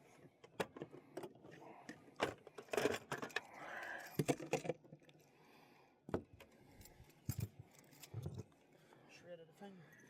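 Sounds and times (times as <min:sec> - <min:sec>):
fishing gear clicks and rattles: 0:00.3 - 0:05.4, 0:06.2 - 0:08.6.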